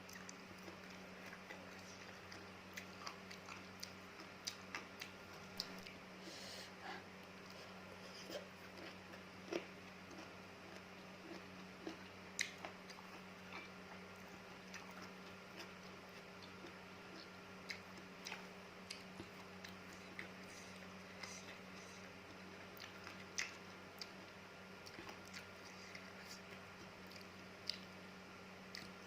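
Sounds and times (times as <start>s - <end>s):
chewing crunchy fruit: 0.0s - 29.0s
faint steady hum: 0.0s - 29.0s.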